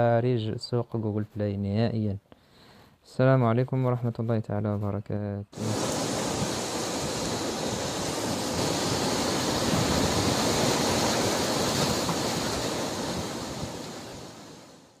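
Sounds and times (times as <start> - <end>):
ocean surf rushing: 5.6 - 15.0.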